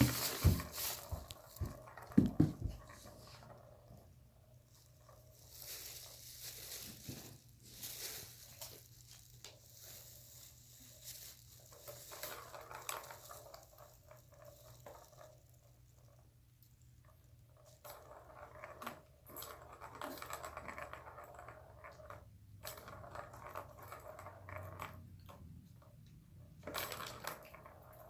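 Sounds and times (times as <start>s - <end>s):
faint rustling and pattering: 0.0s - 16.2s.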